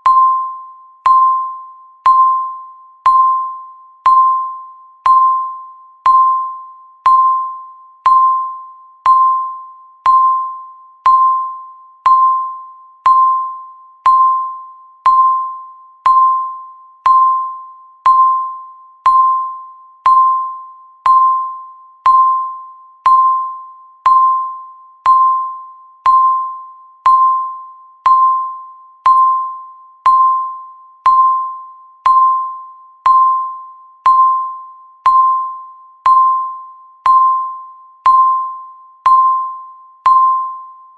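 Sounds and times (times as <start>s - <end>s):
electronic timer ping: 0.0s - 40.9s.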